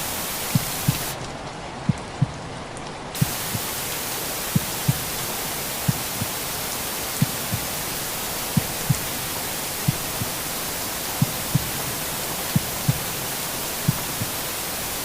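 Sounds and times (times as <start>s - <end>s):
white noise hiss: 0.0s - 15.0s
heartbeat thumps: 0.3s - 1.2s, 3.2s - 3.8s, 4.5s - 5.2s, 5.9s - 6.4s, 7.1s - 7.8s, 8.5s - 9.2s, 9.9s - 10.4s, 11.2s - 11.9s, 12.5s - 13.1s, 13.8s - 14.4s.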